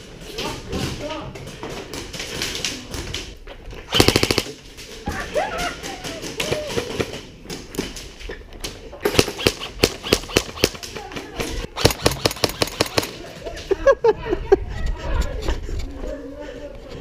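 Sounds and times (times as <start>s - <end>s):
airsoft gun full-auto burst: 3.9s - 4.6s, 9.2s - 10.8s, 11.7s - 13.2s
airsoft gun single shots: 9.1s - 10.8s.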